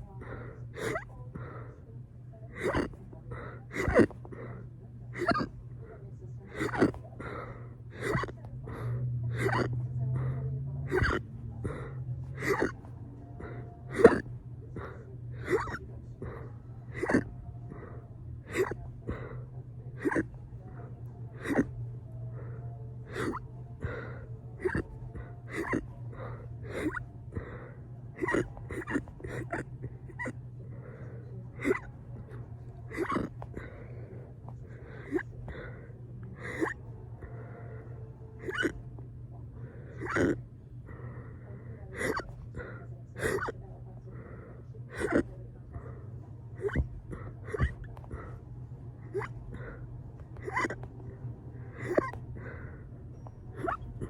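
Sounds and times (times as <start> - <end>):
person hiccuping: 0.0 - 1.6, 2.5 - 5.6, 6.5 - 8.5, 9.3 - 9.8, 10.9 - 19.4, 20.0 - 21.8, 23.1 - 30.4, 31.5 - 35.8, 36.4 - 37.5, 38.4 - 39.0, 39.9 - 40.4, 41.9 - 43.6, 44.9 - 46.0, 46.6 - 48.4, 49.0 - 51.0, 51.7 - 52.7, 53.5 - 54.0.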